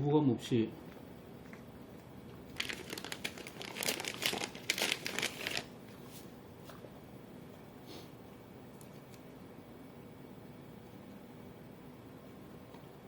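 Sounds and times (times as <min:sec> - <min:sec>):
crinkling rustle: 0:02.5 - 0:06.3.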